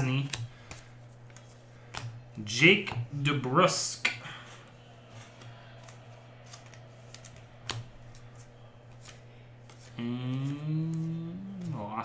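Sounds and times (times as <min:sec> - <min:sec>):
cards clicking and snapping: 0:00.1 - 0:03.0, 0:05.0 - 0:11.9
man's drawn-out vocal sound: 0:10.0 - 0:12.0.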